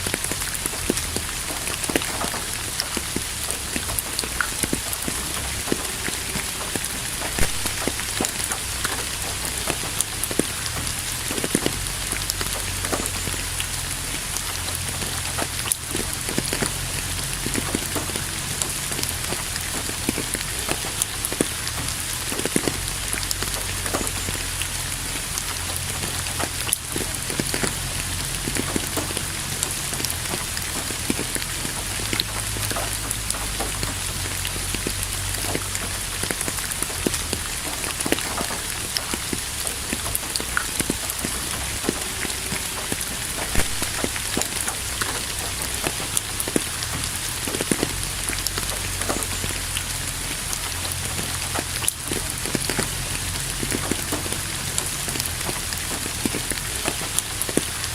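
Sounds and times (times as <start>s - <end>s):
rain drops pattering: 0.0s - 57.9s.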